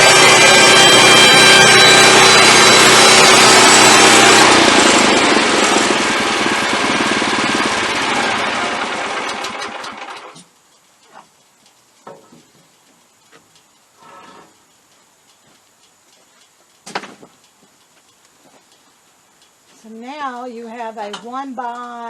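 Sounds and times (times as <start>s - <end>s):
band sawmill winding down: 0.0s - 10.4s.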